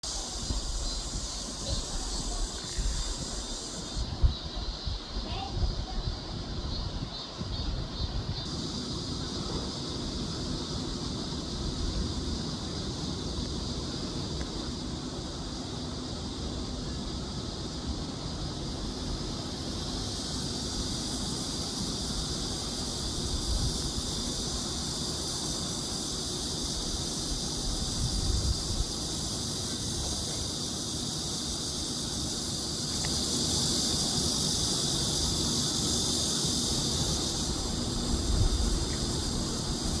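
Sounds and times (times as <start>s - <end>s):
wind rumbling on microphone: 0.0s - 8.5s, 20.1s - 30.6s, 34.1s - 40.0s.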